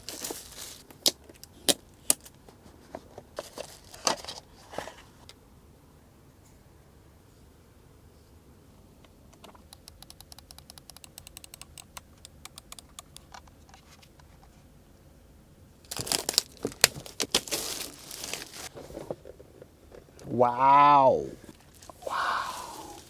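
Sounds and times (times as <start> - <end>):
plastic packaging crinkling: 0.0 - 1.2, 15.8 - 18.8
mechanical keyboard clicking: 9.4 - 13.4.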